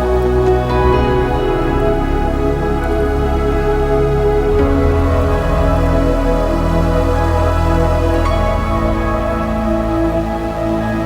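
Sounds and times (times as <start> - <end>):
sustained synthesizer chords: 0.0 - 11.0.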